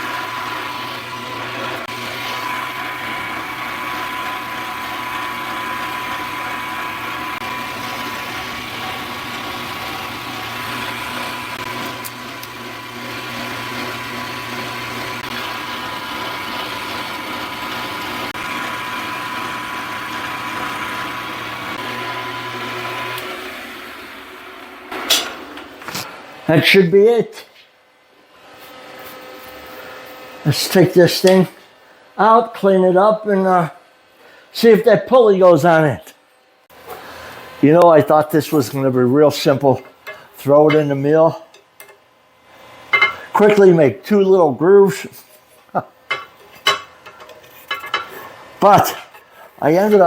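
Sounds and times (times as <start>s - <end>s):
milling machine cutting metal: 0.0s - 26.1s, 37.6s - 42.0s, 46.1s - 50.0s.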